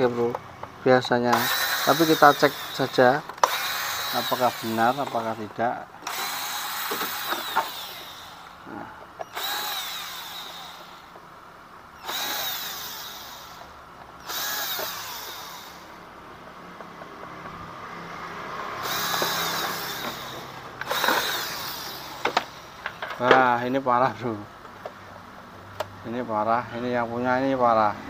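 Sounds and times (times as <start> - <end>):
power drill whining: 1.3 - 11.2, 12.0 - 16.0, 18.8 - 23.3.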